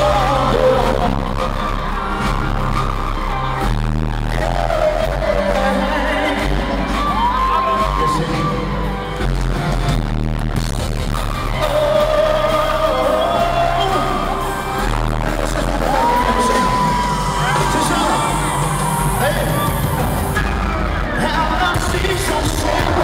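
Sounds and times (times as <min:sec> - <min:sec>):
amplified live band: 0:00.0 - 0:23.0
singer holding long notes: 0:11.1 - 0:23.0.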